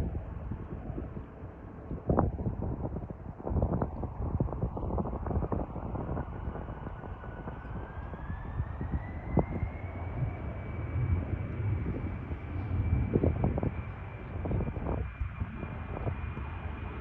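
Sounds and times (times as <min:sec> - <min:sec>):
low rumble: 0:00.0 - 0:17.0
jet engines spooling up: 0:05.4 - 0:17.0.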